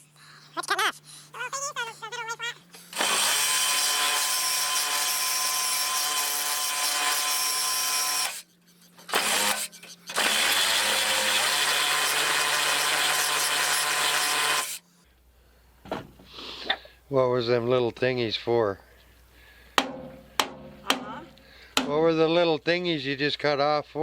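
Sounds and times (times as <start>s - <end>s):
hand-held power tool running: 2.7s - 14.8s.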